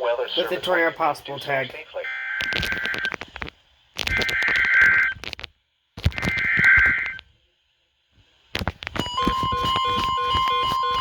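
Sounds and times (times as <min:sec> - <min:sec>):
digital data screech: 0:04.0 - 0:05.2.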